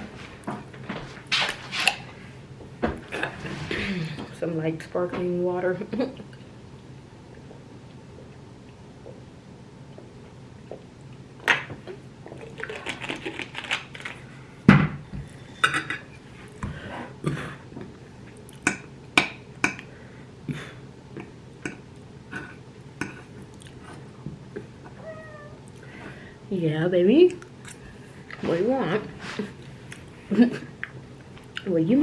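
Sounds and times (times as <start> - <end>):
chewing: 11.8 - 14.3, 23.0 - 24.1, 29.4 - 30.2.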